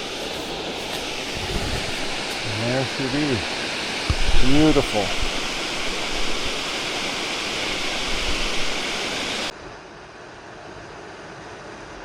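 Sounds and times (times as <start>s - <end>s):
waterfall rushing: 0.0s - 9.5s.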